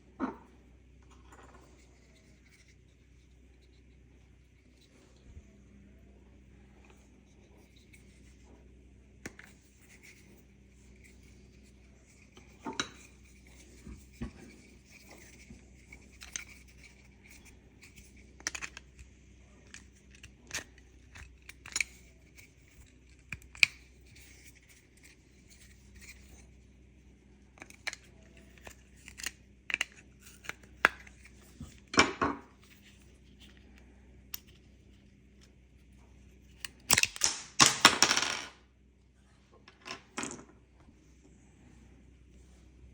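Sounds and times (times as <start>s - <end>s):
plastic parts clicking and tapping: 12.1s - 26.4s, 27.6s - 32.0s.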